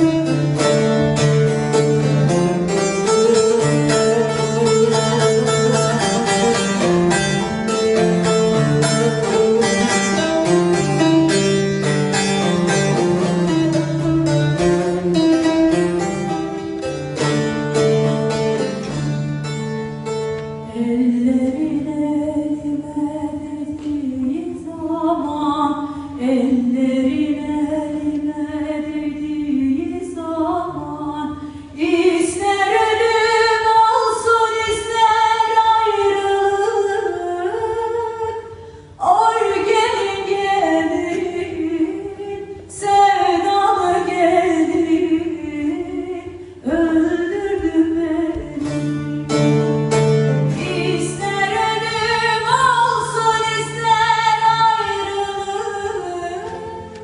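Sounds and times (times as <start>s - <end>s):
instrumental accompaniment: 0.0s - 21.8s, 31.4s - 57.0s
woman singing a slow folk song: 20.6s - 49.7s, 50.3s - 57.0s.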